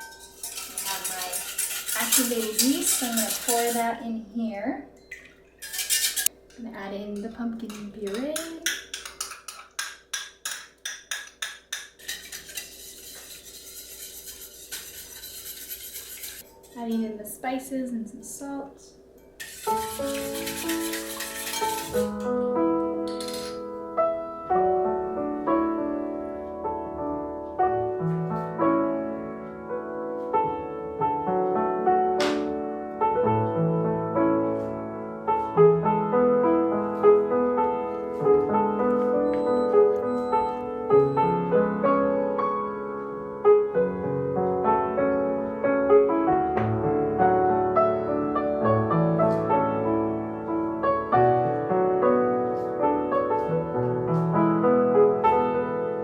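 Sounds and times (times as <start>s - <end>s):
gentle piano music: 0.0s - 4.7s, 19.6s - 56.0s.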